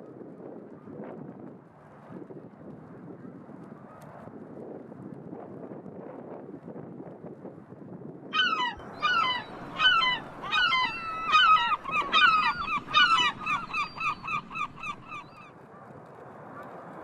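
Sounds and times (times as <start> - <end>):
gull long call: 8.4 - 15.3.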